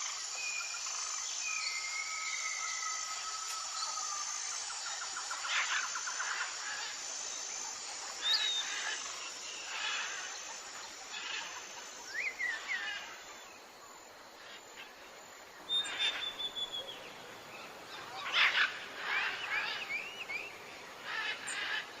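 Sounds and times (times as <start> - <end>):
outdoor background noise: 0.0 - 22.0
birds chirping and calling: 15.7 - 17.0.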